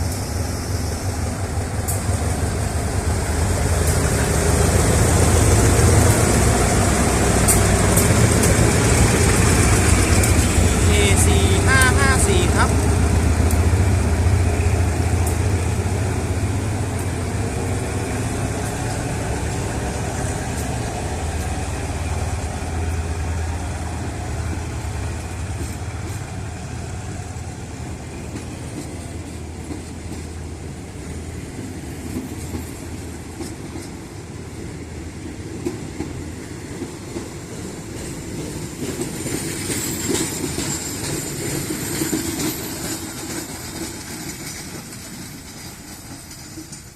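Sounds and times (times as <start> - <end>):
diesel locomotive engine drone: 0.0 - 46.9
train cars rolling on rails: 0.0 - 46.9.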